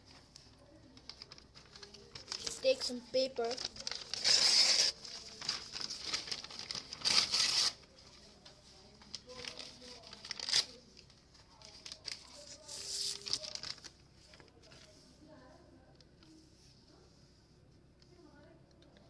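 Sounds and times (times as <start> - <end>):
paper rustling: 0.0 - 15.1
paper tearing: 3.4 - 7.8.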